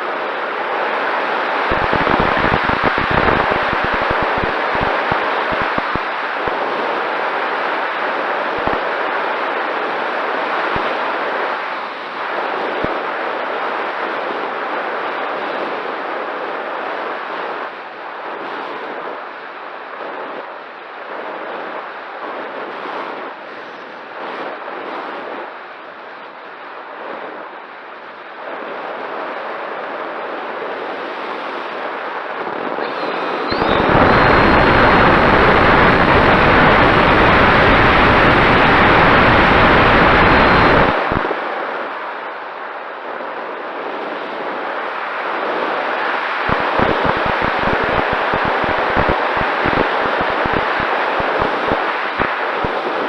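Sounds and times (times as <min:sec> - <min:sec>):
low thumps of wind gusts: 0:00.6 - 0:10.0, 0:31.7 - 0:41.9, 0:43.2 - 0:53.0
wind buffeting microphone: 0:01.6 - 0:07.0, 0:31.6 - 0:41.4, 0:46.4 - 0:53.0.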